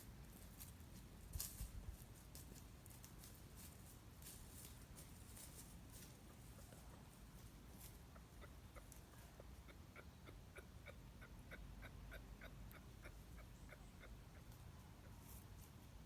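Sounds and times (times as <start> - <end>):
kangaroo clucking: 6.0 - 15.6.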